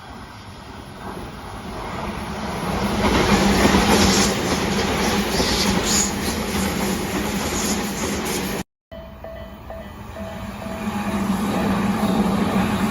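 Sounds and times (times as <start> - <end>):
wheels rumbling on rails: 9.5 - 12.9.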